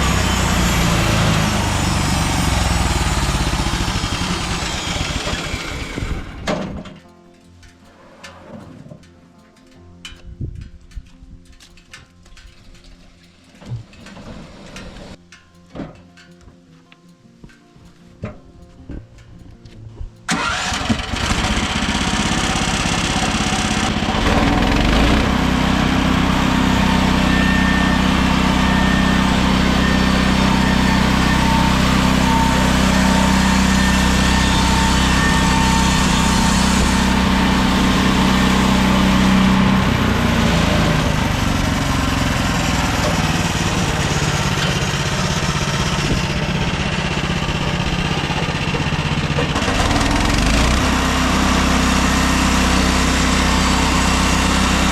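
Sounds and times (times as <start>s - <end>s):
sawmill gasoline engine running: 0.0s - 7.0s, 20.3s - 54.9s.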